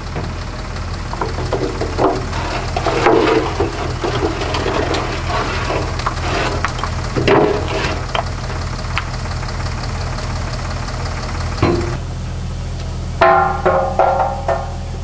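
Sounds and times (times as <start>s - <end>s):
low machine hum: 0.0s - 15.0s
ringing metallic clangs: 11.6s - 12.0s, 13.2s - 14.9s.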